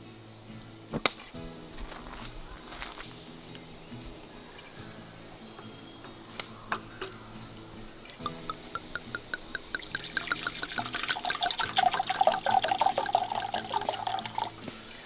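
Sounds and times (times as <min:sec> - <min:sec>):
soft background music: 0:00.0 - 0:15.0
liquid pouring into a cup: 0:08.2 - 0:14.7.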